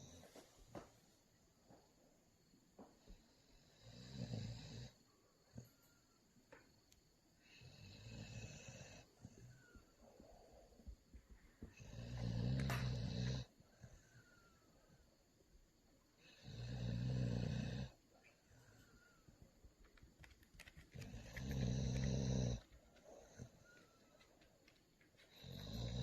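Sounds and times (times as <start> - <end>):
quiet breathing: 0.0 - 26.0
loud rasping snoring: 3.7 - 5.0, 7.6 - 9.1, 11.7 - 13.5, 16.2 - 18.0, 21.0 - 23.8, 25.3 - 26.0.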